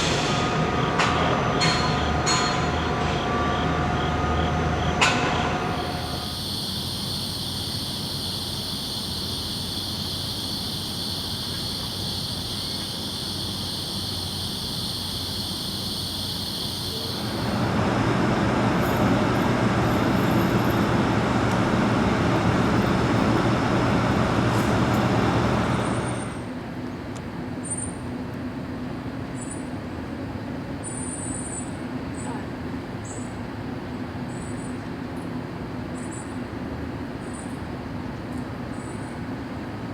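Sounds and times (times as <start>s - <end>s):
steady high-pitched whine: 0.0s - 26.6s
urban traffic noise: 0.0s - 30.8s.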